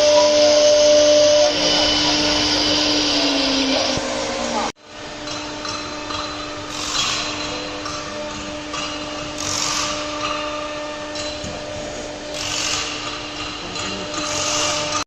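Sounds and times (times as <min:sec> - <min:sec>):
router bit cutting wood: 0:00.0 - 0:04.7
cnc router spindle running: 0:00.0 - 0:15.0.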